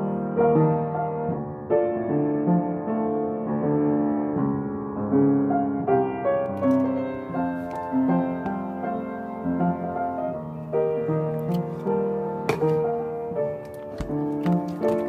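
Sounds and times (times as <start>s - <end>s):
keyboard melody with chords: 6.0s - 15.0s.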